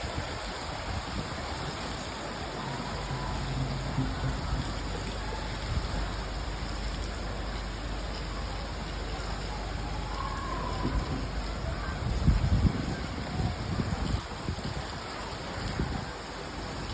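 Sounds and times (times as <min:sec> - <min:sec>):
steady rain falling: 0:00.0 - 0:16.9
low thumps: 0:02.5 - 0:06.7.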